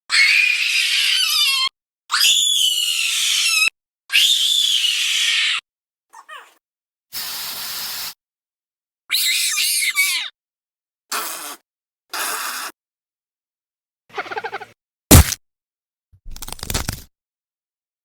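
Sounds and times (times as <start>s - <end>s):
shrill wavering creature screeches: 0.1s - 5.6s, 9.1s - 10.3s
creature hiss: 7.2s - 8.2s.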